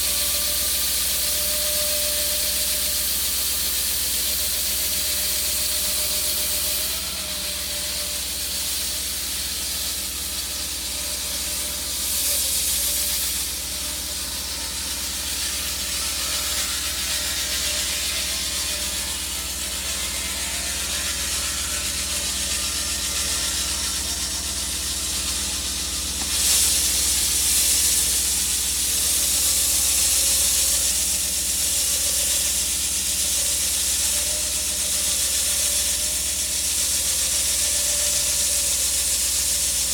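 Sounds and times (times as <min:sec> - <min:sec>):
concrete saw grinding: 0:00.0 - 0:39.9.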